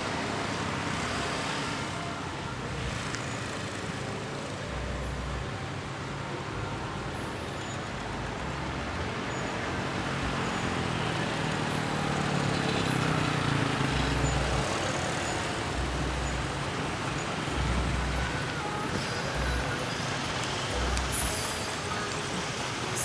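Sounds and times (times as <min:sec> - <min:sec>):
road traffic noise: 0:00.0 - 0:23.0
heavy vehicle engine running: 0:10.0 - 0:23.0.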